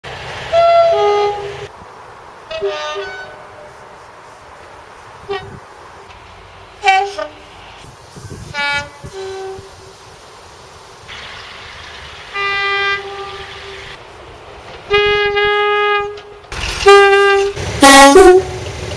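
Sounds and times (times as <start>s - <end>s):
two-tone train horn blasts: 0.5s - 1.7s, 2.5s - 3.9s, 5.2s - 5.6s, 6.8s - 7.5s, 8.3s - 9.9s, 12.3s - 14.0s, 14.9s - 18.7s.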